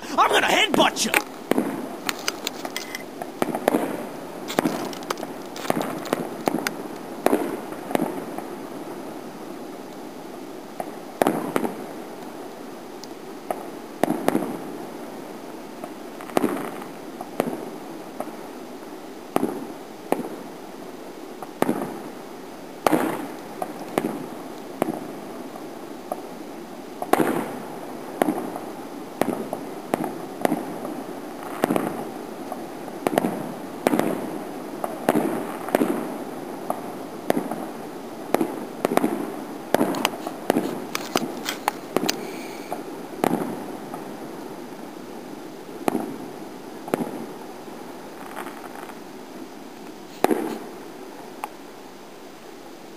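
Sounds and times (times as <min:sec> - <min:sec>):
fireworks bangs with echo: 0:28.2 - 0:28.6, 0:29.2 - 0:32.0, 0:33.0 - 0:40.9, 0:43.2 - 0:44.1, 0:45.8 - 0:46.2.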